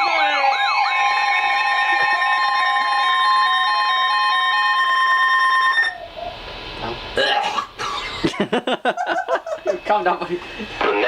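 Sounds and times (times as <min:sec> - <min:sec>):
emergency alert tone: 0:00.0 - 0:06.1.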